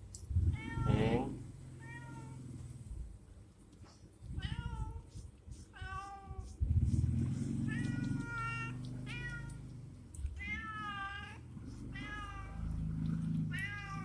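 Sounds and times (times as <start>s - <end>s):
low rumble: 0.1s - 2.0s
cat meowing: 0.5s - 2.4s, 4.4s - 6.6s, 7.7s - 12.9s, 13.5s - 14.0s.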